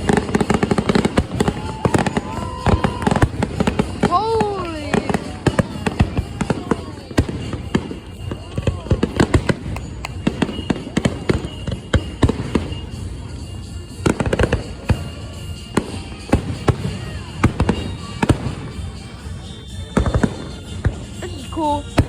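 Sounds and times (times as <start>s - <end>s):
faint firework whistle: 0.0s - 22.0s
fireworks bangs and crackling: 0.0s - 22.0s.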